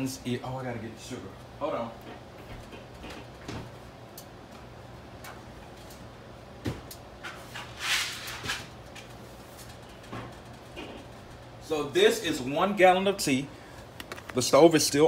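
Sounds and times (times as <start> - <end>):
rustling scrape: 7.4 - 8.7.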